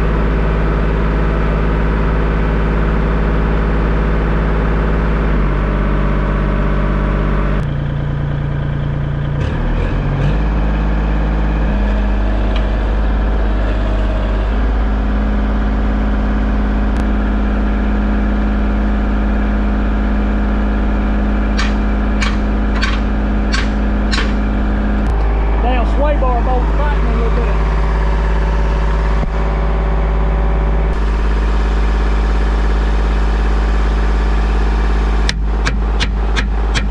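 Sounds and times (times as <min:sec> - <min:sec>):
engine running: 0:00.0 - 0:36.9
sharp clicks: 0:21.6 - 0:24.4.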